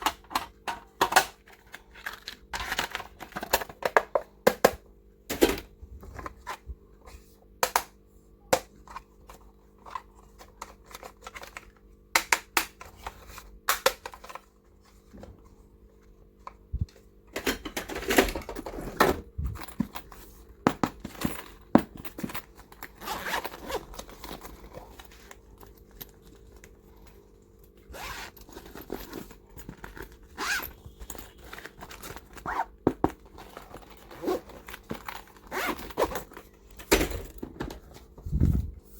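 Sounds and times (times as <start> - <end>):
zipper-like scraping rasps: 27.9 - 28.4.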